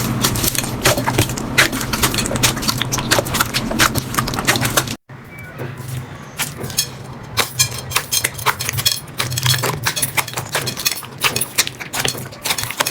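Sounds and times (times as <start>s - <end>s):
slime squished crackling: 0.0s - 5.0s.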